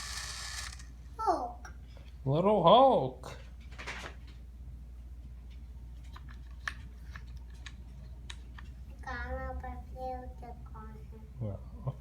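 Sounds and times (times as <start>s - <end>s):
child's drawn-out wordless sound: 1.2s - 1.7s.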